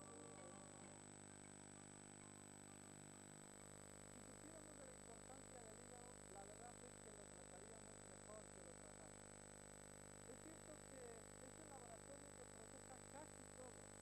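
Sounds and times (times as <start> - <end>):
faint wavering tones: 0.0 - 2.9
thin high whine: 0.0 - 4.0
faint hum and hiss: 0.0 - 14.0.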